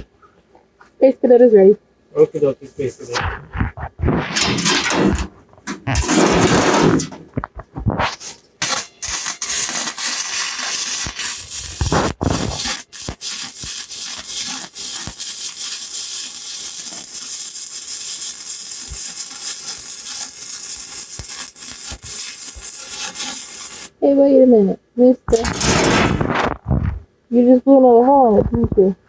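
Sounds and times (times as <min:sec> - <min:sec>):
welding arc crackling: 0:04.0 - 0:24.0, 0:25.3 - 0:26.6.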